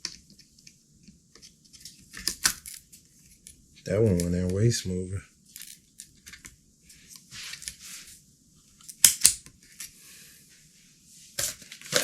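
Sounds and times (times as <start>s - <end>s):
plastic packaging rustling: 11.4s - 12.0s.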